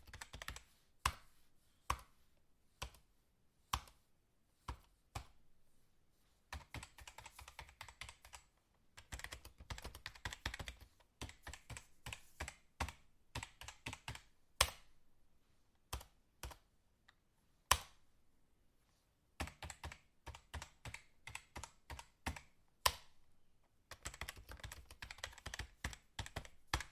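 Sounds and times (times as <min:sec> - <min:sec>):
fast keyboard typing: 0:00.0 - 0:00.7, 0:06.5 - 0:14.8, 0:19.4 - 0:22.6, 0:23.9 - 0:26.9.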